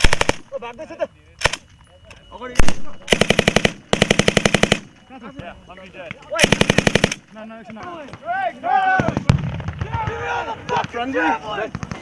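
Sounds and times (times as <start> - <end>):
automatic gunfire: 0.0 - 0.5, 2.6 - 4.9, 6.4 - 7.2.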